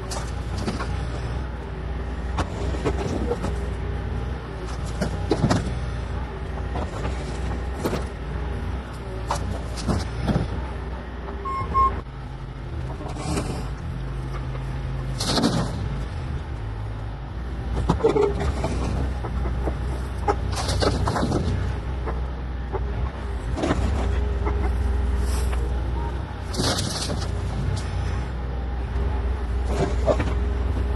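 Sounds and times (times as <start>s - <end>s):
excavator diesel engine: 0.0s - 30.9s
bucket clanking and scraping: 26.5s - 28.0s.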